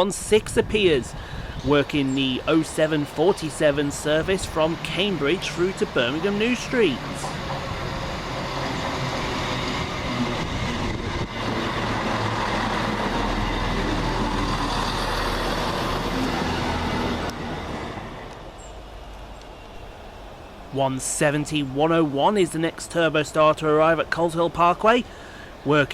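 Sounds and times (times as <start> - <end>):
diesel train passing: 0.0 - 25.9
train wheels on rails: 1.8 - 20.7.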